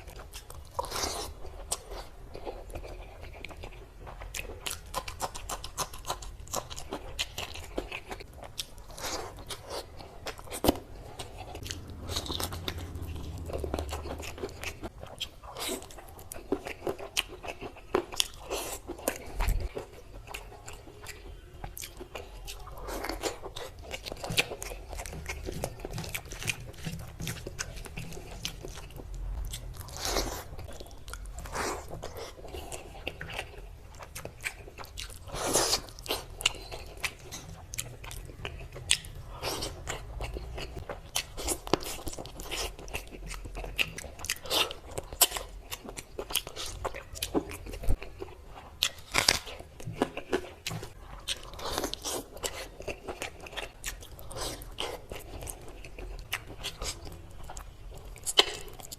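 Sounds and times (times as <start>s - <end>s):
crunchy chewing: 0.0s - 58.9s.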